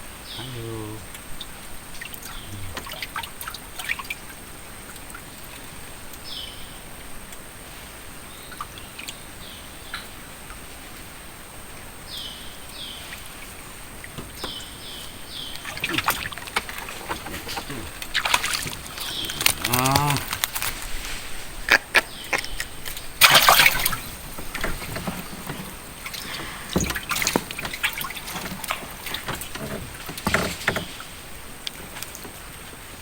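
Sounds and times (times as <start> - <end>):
water trickling and dripping: 0.0 - 21.1, 22.6 - 33.0
splashy clicks: 1.1 - 6.2, 13.1 - 20.9, 22.4 - 32.6.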